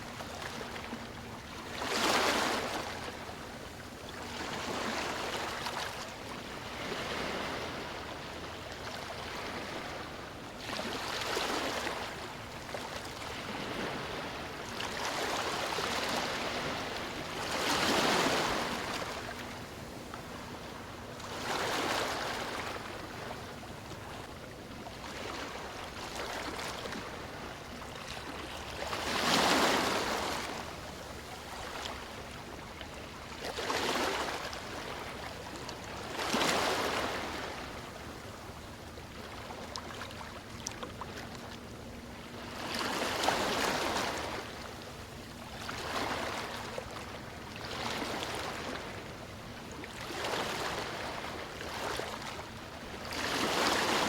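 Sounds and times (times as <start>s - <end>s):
sea waves breaking on beach: 13.3s - 19.5s, 28.2s - 32.0s.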